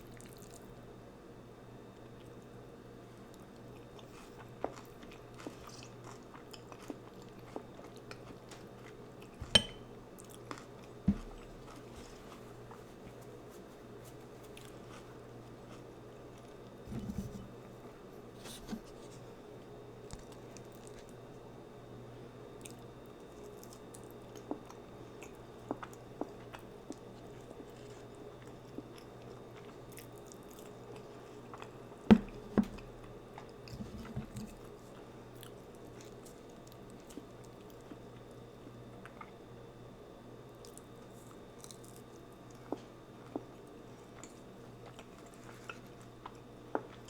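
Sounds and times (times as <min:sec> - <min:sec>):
person chewing food: 0:03.3 - 0:17.6, 0:22.6 - 0:38.4, 0:39.0 - 0:39.4, 0:40.6 - 0:47.0.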